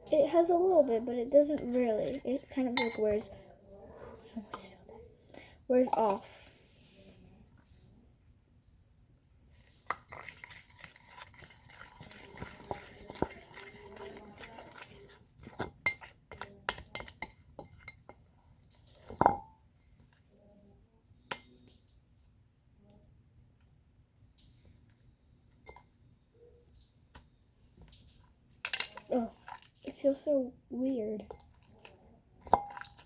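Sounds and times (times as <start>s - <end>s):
spoon stirring slime in bowl: 0.1s - 3.5s, 4.2s - 6.5s, 9.5s - 20.3s, 24.3s - 33.0s
spoon knocking bowl: 11.5s - 18.2s, 19.1s - 19.6s.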